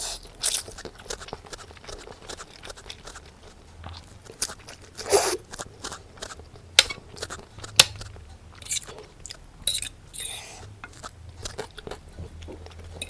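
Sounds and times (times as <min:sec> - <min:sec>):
chewing and crunching food: 0:00.0 - 0:13.0.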